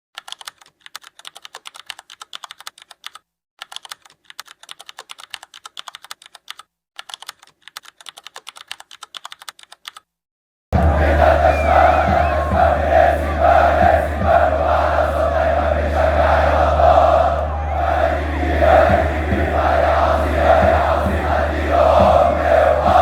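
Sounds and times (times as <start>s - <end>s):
rapid keyboard typing clicks: 0.2s - 10.1s.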